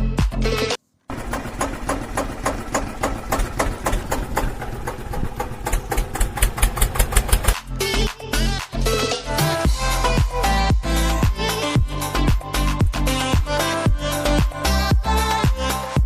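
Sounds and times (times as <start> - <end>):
music: 0.0 - 0.8, 7.6 - 16.0
engine sound effect clattering: 1.1 - 7.7.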